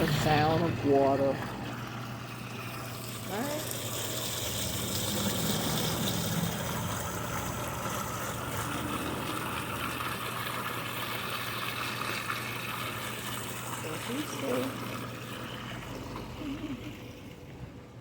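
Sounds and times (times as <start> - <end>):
water running in water feature: 0.0 - 18.0.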